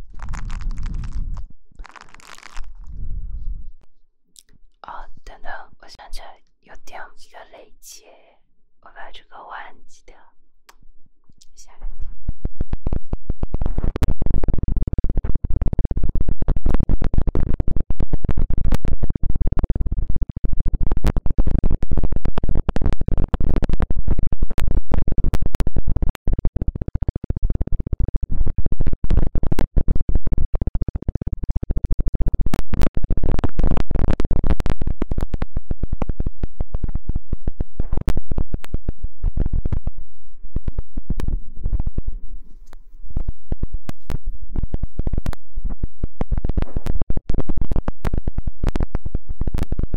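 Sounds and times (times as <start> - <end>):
rubbing and scratching on microphone: 0.0 - 4.0, 4.8 - 8.2, 8.9 - 10.2, 11.4 - 49.9
heavy low rumble: 0.0 - 7.1, 36.2 - 49.6.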